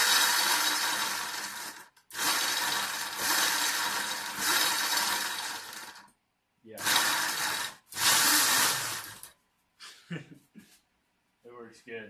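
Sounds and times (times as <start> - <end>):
electric motor spinning: 0.0 - 6.1, 6.8 - 9.3.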